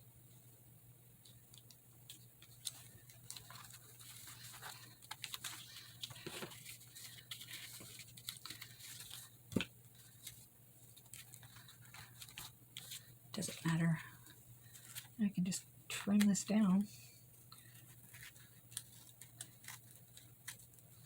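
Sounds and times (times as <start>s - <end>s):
paper rustling: 1.5s - 13.8s, 14.6s - 15.2s, 17.4s - 21.0s
scissors snipping paper: 18.0s - 21.0s.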